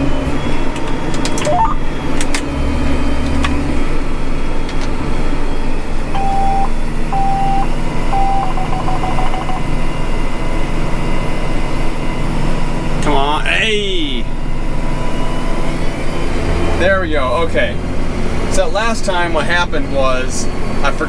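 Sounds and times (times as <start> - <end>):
electronic alert beeping: 6.2 - 9.7.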